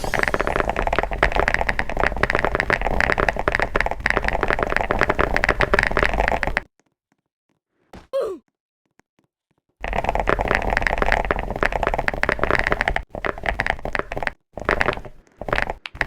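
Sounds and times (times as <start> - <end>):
rapid keyboard typing: 0.0 - 6.7, 9.8 - 16.0.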